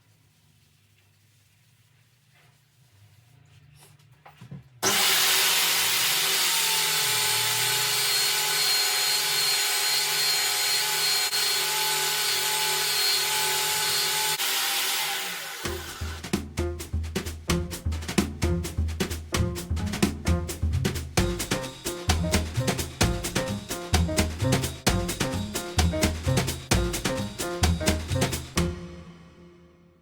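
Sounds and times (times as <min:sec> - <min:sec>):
electric polisher motor whir: 0:04.8 - 0:16.2.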